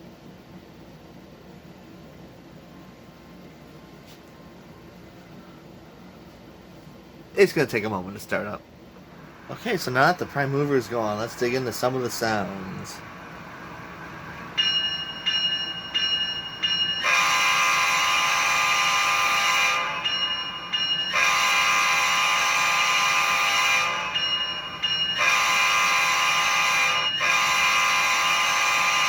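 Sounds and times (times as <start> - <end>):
ringing strokes from small speaker: 14.5 - 29.0
diesel horn blasts: 17.0 - 20.0, 21.1 - 24.2, 25.2 - 29.0.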